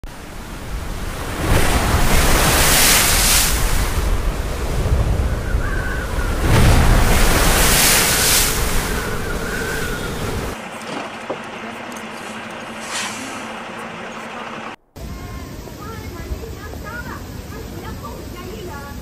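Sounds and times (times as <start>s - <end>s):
strong wind blowing on microphone: 0.0s - 10.6s.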